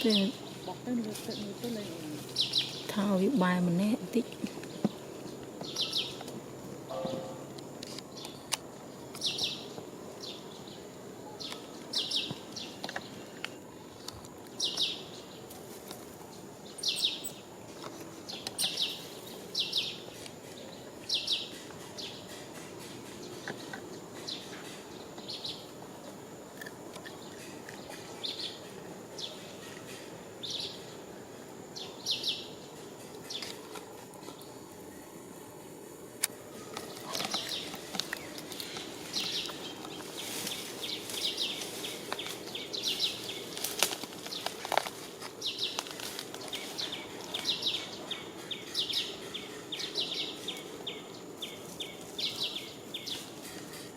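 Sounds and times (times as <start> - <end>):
steady outdoor hiss: 0.0 - 53.9
thin constant high tone: 6.9 - 7.6.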